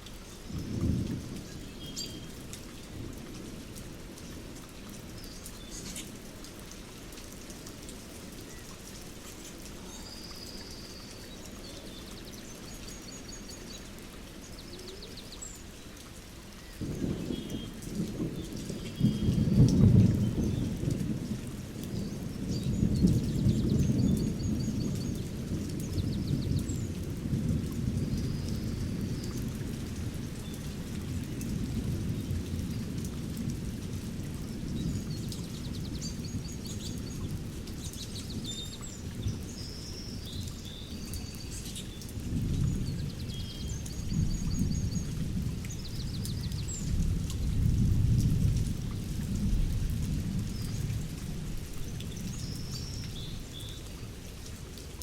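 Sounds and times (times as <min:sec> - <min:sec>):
small birds chirping: 0:05.2 - 0:06.4, 0:34.5 - 0:47.1
distant rolling thunder: 0:16.8 - 0:39.6, 0:41.5 - 0:52.7.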